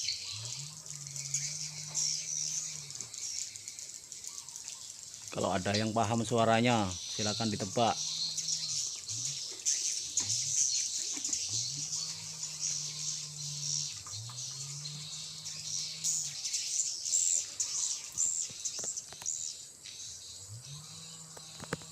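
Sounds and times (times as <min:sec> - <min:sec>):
swiftlets twittering: 0:00.0 - 0:19.0.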